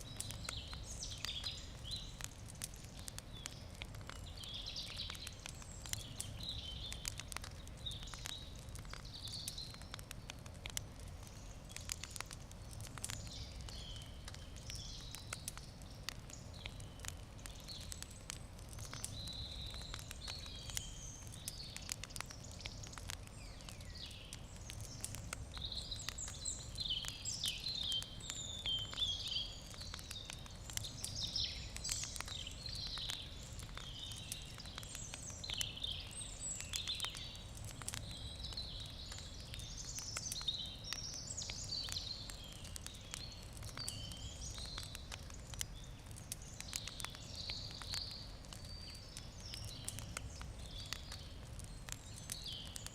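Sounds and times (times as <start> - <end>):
campfire crackling and popping: 0.0 - 52.9
birds twittering: 13.1 - 52.9.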